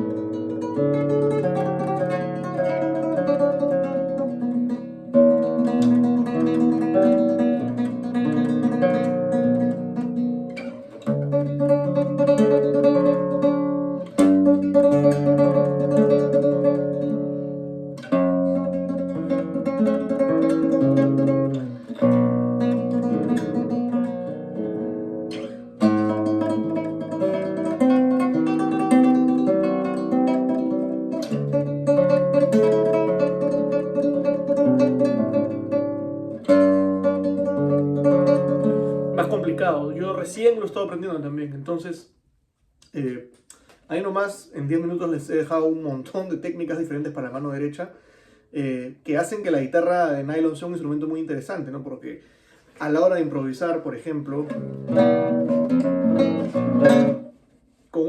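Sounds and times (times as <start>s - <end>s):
nylon-string guitar tremolo: 0.0s - 41.4s, 54.1s - 57.8s.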